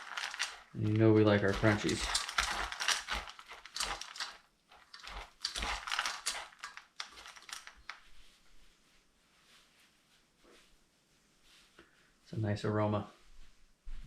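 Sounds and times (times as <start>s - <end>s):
dry kibble crunching: 0.0s - 8.0s.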